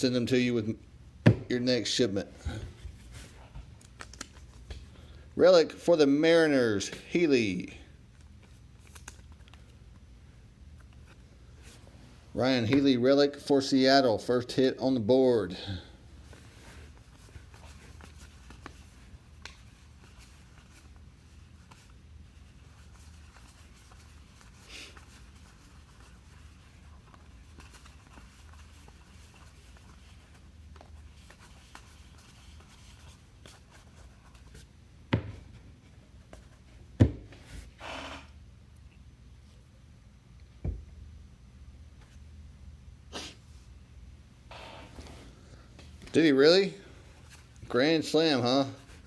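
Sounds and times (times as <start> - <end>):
cards sliding and rubbing: 16.2 - 34.7.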